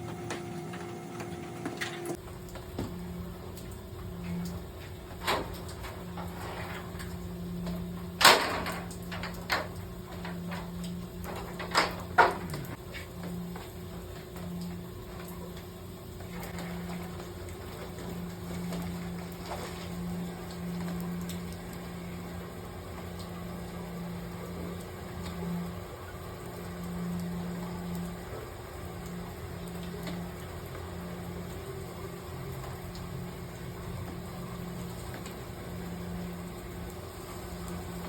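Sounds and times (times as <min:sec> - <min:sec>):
boiler-room machinery hum: 0:00.0 - 0:38.0.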